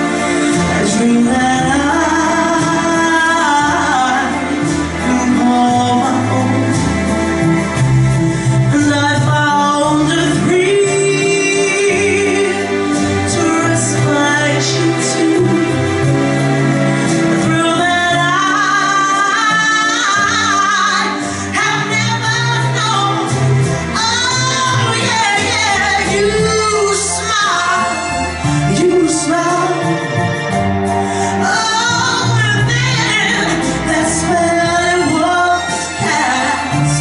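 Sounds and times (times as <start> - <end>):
woman singing soul ballad: 0.0 - 7.4, 8.6 - 37.0
band accompaniment: 0.0 - 37.0.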